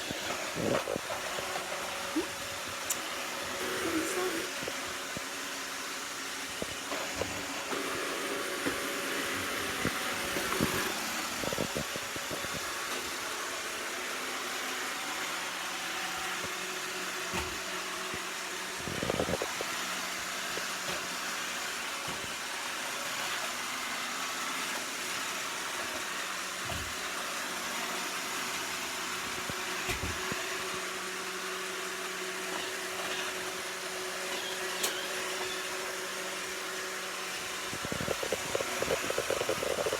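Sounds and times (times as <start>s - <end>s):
robot vacuum whirring: 0.0s - 39.9s.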